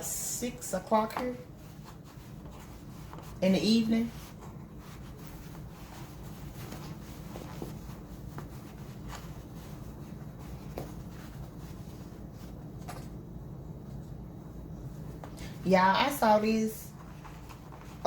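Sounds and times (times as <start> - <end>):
low room hum: 0.0 - 18.0.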